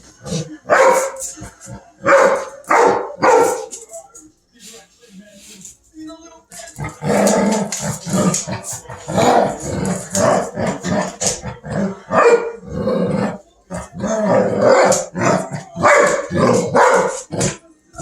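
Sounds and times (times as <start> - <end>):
dogs growling and snarling: 6.8 - 18.0.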